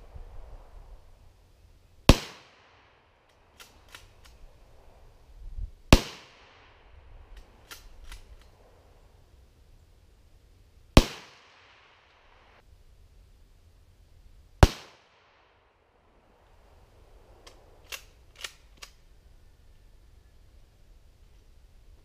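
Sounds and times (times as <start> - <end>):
rifle shots with echo: 2.1 - 4.0, 5.9 - 6.8, 11.0 - 12.4, 14.6 - 15.6
faint rifle bolt clicks: 17.4 - 19.0.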